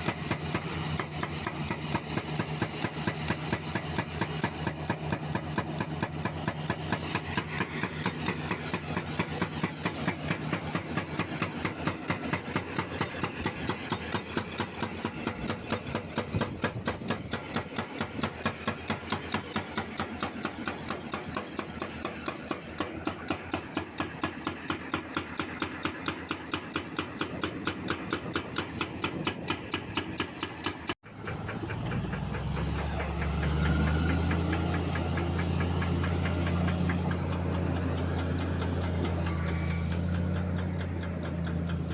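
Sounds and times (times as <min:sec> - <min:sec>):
hydraulic breaker hammering concrete: 0:00.0 - 0:41.9
diesel engine humming: 0:06.7 - 0:24.2, 0:31.0 - 0:41.9.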